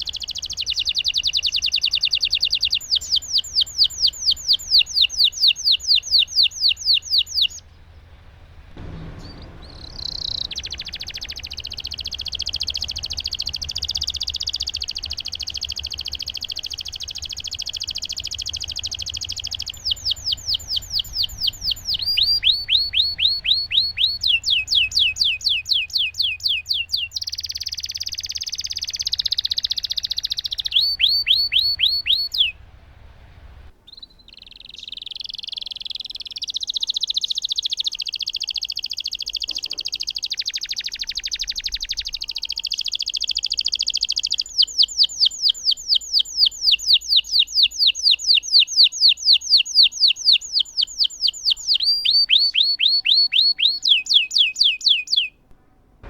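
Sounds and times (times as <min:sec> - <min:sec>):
canary singing: 0:00.0 - 0:32.8, 0:33.8 - 0:55.6.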